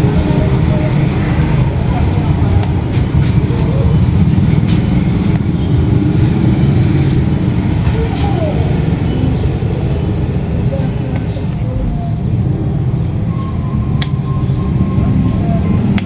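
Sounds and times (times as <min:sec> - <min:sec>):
motorcycle engine running: 0:00.0 - 0:14.9.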